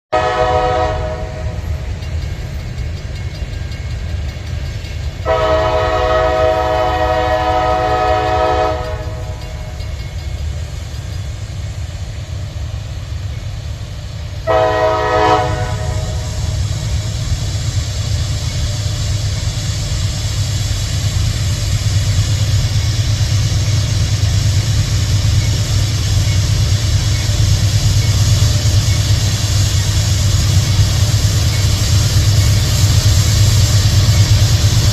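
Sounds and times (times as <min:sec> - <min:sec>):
locomotive air horn chord: 0:00.1 - 0:01.6, 0:05.2 - 0:09.4, 0:14.4 - 0:16.5
diesel locomotive engines rumbling: 0:00.1 - 0:34.9.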